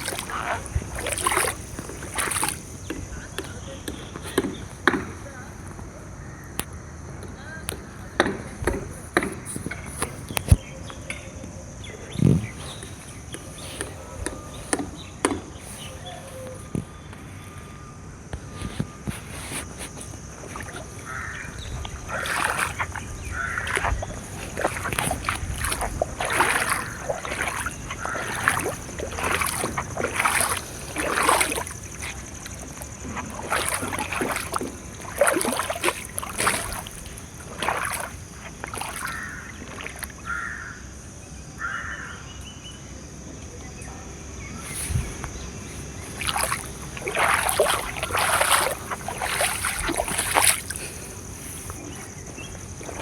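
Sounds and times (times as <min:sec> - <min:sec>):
water splashing: 0:00.0 - 0:03.6, 0:18.6 - 0:40.4, 0:44.9 - 0:53.0.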